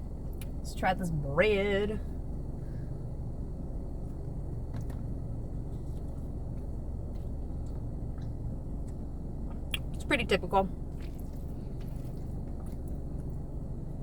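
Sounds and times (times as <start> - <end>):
low background rumble: 0.0 - 14.0
bread being bitten and chewed: 10.9 - 13.5.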